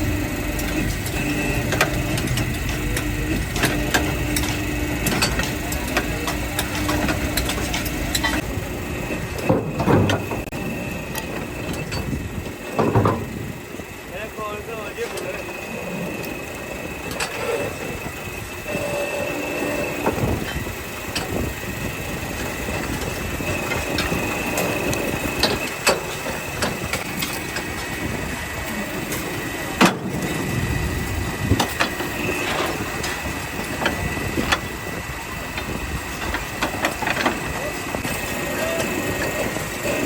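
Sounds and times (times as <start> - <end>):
machinery high whine: 0.0 - 40.0.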